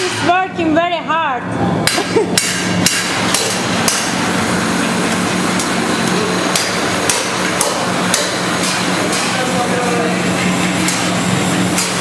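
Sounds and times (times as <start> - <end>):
machine hum: 0.0 - 12.0
workshop noise: 0.0 - 12.0
hammer striking metal: 1.8 - 4.2, 6.5 - 9.4, 11.7 - 12.0.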